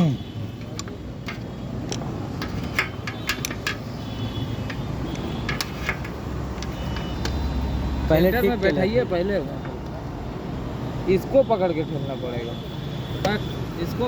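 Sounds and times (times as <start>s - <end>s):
steady background noise: 0.0s - 14.0s
clicks and clinks of tools: 0.6s - 3.9s.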